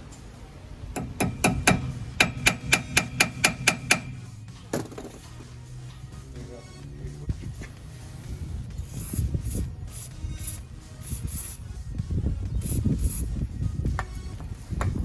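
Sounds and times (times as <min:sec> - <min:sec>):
hammer striking metal: 0:01.0 - 0:04.9.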